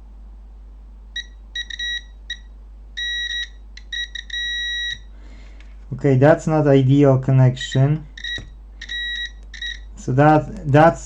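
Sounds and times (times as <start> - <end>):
continuity tester beeping: 1.2 - 5.2, 7.5 - 11.0.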